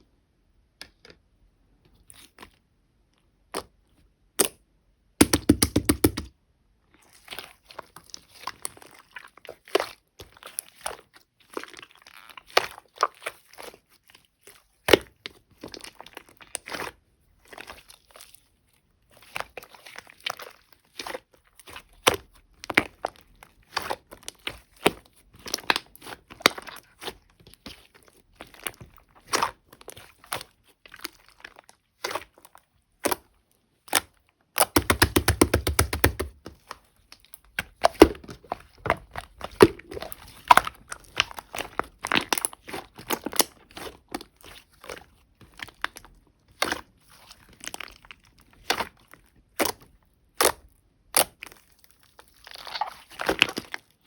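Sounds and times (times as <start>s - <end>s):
sticky clicks and pops: 5.2s - 6.3s, 34.6s - 36.6s
slime squished by hand: 19.2s - 54.0s.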